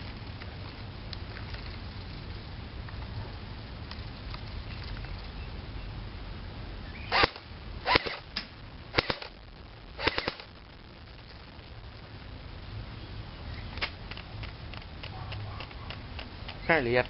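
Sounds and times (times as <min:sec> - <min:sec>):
airsoft gun firing bursts: 0:07.1 - 0:08.2, 0:08.9 - 0:09.3, 0:10.0 - 0:10.5.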